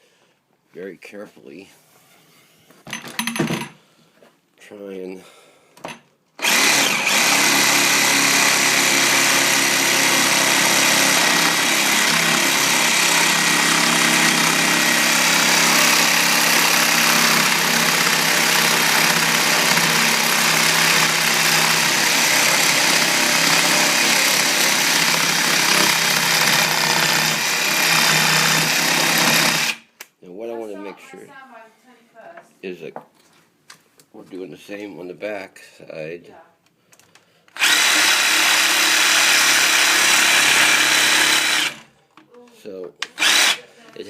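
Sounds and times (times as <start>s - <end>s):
electric jigsaw cutting wood: 6.4s - 29.9s, 37.6s - 41.9s, 43.2s - 43.7s.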